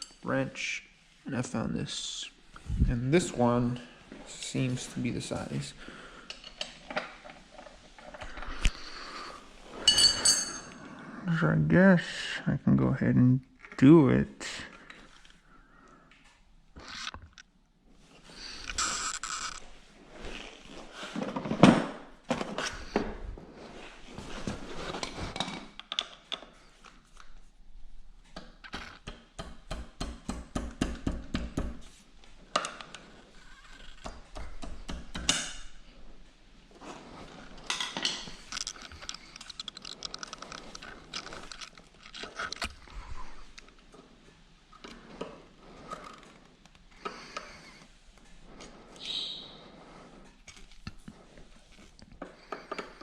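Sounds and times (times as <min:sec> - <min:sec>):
ringing metallic clink: 0:09.8 - 0:10.8
metal hand tools clinking: 0:09.8 - 0:10.9
clicking and scraping on metal: 0:37.5 - 0:44.0.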